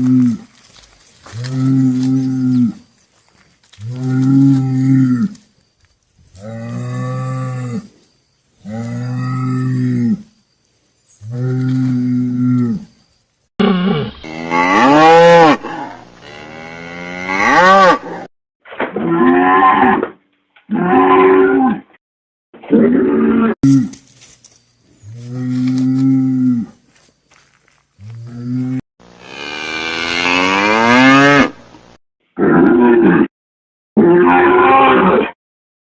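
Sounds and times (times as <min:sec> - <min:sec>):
cattle mooing: 0:13.7 - 0:18.3, 0:34.0 - 0:35.3.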